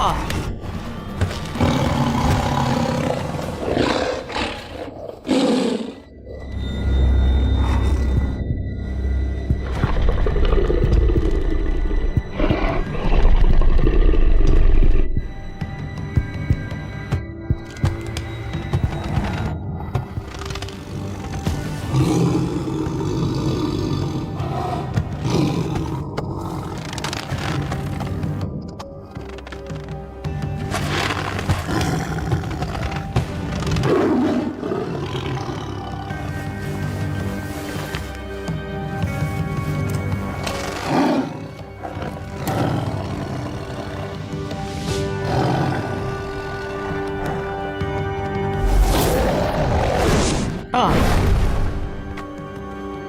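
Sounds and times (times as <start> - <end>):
background music: 0.0 - 53.0
tiger roaring: 1.5 - 6.1, 9.9 - 15.1, 40.6 - 44.4.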